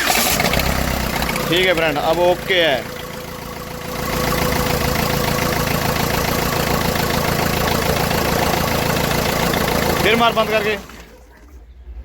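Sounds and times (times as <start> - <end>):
diesel engine idling: 0.0 - 11.3.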